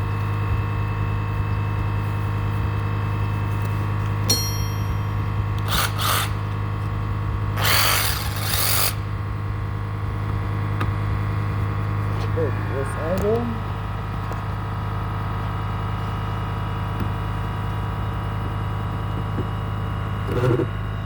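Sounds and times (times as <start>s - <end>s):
reciprocating saw motor hum: 4.4s - 6.6s, 7.5s - 9.1s
saw blade rasping into wood: 5.7s - 6.4s, 7.6s - 9.0s.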